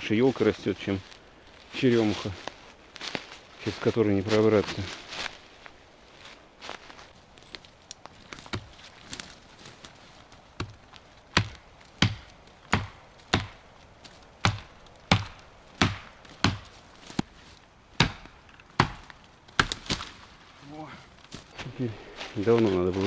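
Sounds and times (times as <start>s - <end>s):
axe chopping wood: 8.3s - 8.7s, 10.6s - 17.4s, 18.0s - 20.1s.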